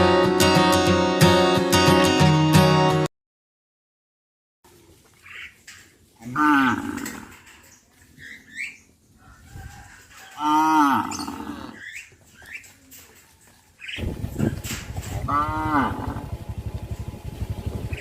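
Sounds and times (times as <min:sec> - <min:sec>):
cattle mooing: 0:06.2 - 0:07.5, 0:10.4 - 0:11.9, 0:15.1 - 0:16.4.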